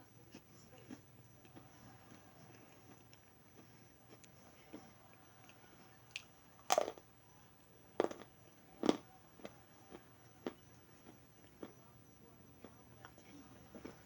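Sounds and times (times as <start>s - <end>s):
crisp crunching of brittle food: 8.0s - 11.8s.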